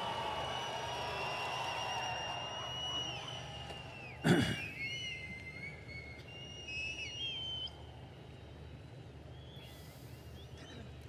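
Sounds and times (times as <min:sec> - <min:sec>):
audience whistling: 0:00.0 - 0:07.9.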